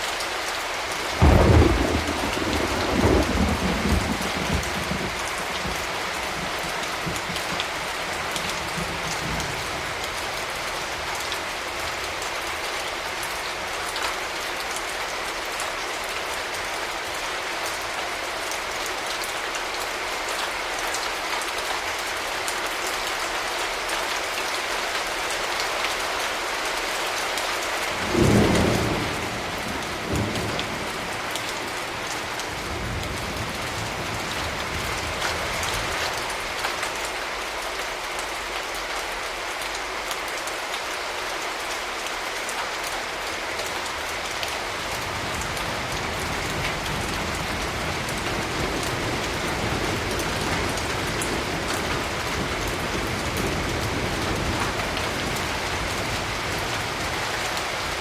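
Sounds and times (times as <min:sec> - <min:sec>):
steady rain: 0:00.0 - 0:58.0
thunder clap: 0:01.2 - 0:05.8, 0:28.0 - 0:36.0
low thunder rumble: 0:01.2 - 0:07.5, 0:28.0 - 0:35.6.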